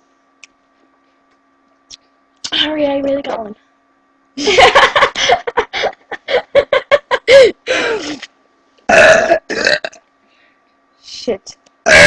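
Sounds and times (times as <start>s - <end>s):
girls giggling: 4.4s - 7.6s.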